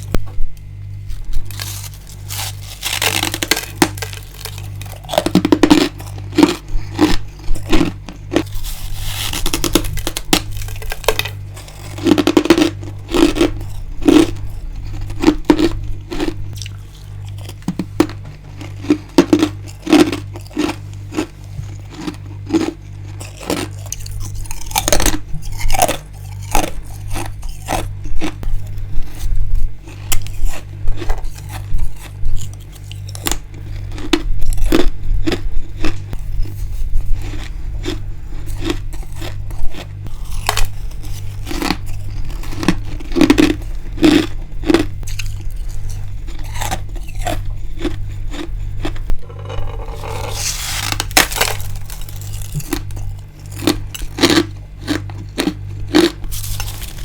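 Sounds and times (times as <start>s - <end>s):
chewing crunchy ice: 0.0s - 57.0s
steady low hum: 0.0s - 57.0s.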